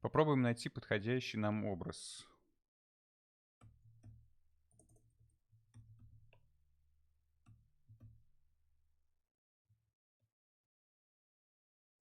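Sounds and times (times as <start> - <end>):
computer keys and mouse clicking: 3.6 - 6.5.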